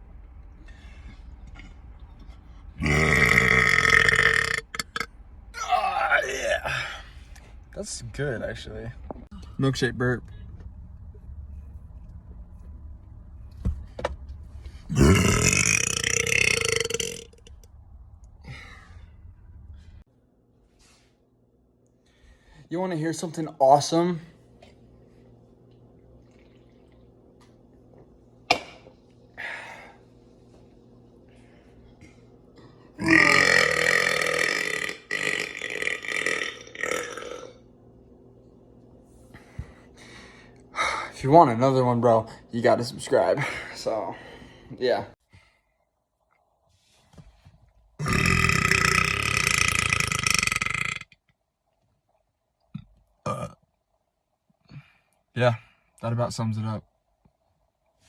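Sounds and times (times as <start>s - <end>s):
man burping: 2.8s - 7.0s, 14.9s - 17.4s, 33.0s - 37.6s, 48.0s - 51.2s, 52.8s - 53.6s.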